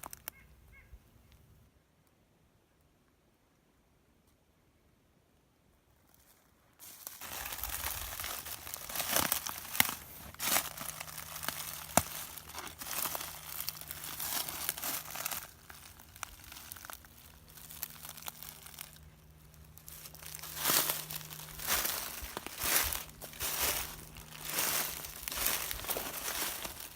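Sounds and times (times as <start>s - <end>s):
footsteps crunching through leaves: 6.8s - 26.9s.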